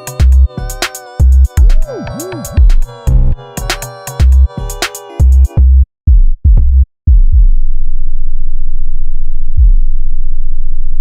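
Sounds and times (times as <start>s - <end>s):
loud low buzzing bass tone: 2.1s - 3.4s, 5.6s - 11.0s.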